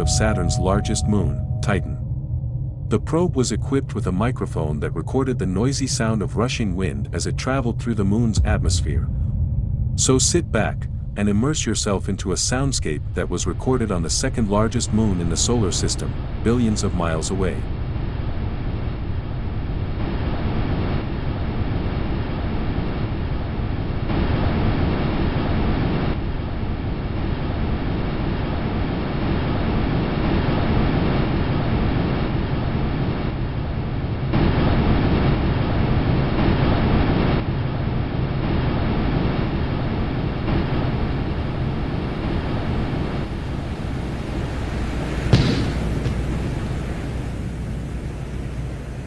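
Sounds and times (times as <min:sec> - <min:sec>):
rushing wind noise: 0:17.6 - 0:49.0.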